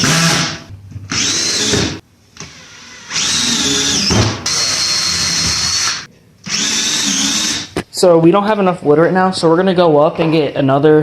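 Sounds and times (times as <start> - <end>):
power drill motor whine: 1.1 - 7.7.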